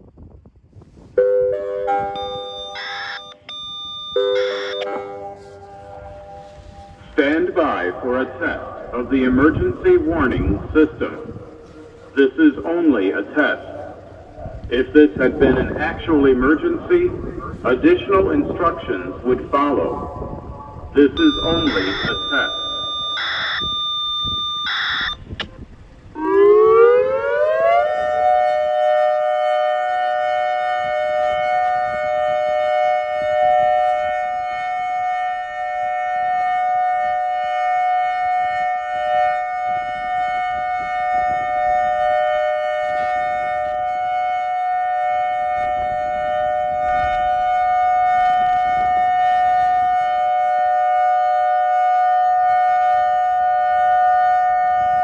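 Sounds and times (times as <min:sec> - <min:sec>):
electronic warning siren: 0:01.6 - 0:07.3, 0:20.2 - 0:25.4, 0:26.1 - 0:55.0.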